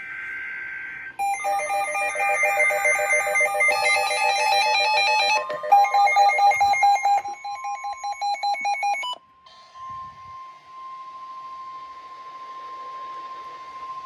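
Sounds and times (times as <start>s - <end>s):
rapid pulsing alert beeps: 1.2s - 9.2s
steady high alert tone: 1.2s - 9.2s.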